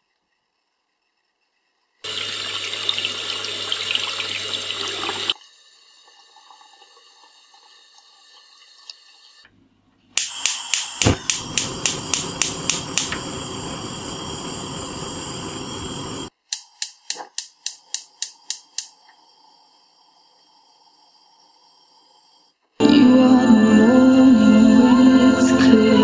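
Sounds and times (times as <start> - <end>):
sharp clicks: 10.2 - 13.3, 16.5 - 19.0
loud steady hiss: 10.2 - 18.9.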